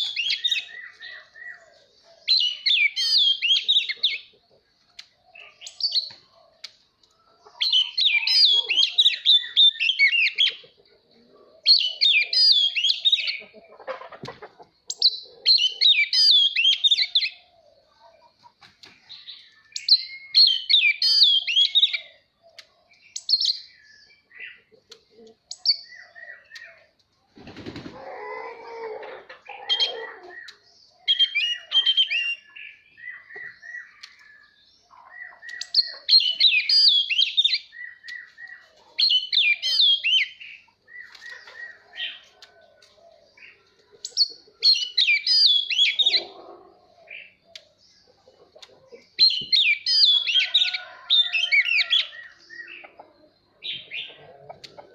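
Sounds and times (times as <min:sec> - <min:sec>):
wing flapping rustle: 0:27.3 - 0:28.0
bird singing whistled phrases: 0:35.2 - 0:41.8, 0:44.7 - 0:46.1.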